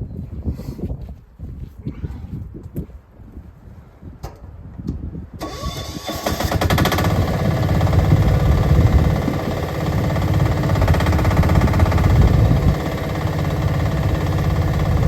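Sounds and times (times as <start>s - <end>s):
diesel engine starting and running: 5.4s - 15.0s.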